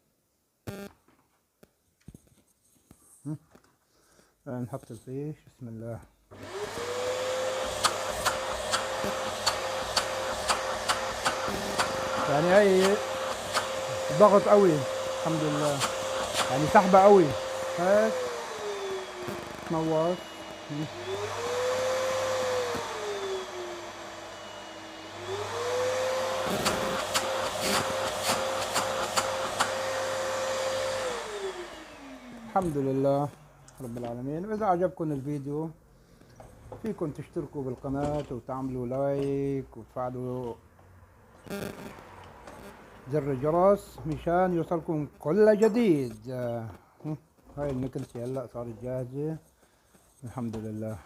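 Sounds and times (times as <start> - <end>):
vacuum cleaner motor whining: 6.3 - 34.1, 41.5 - 42.8
person speaking: 9.6 - 24.0, 32.2 - 35.8, 36.8 - 40.6, 43.0 - 49.4, 50.2 - 51.0.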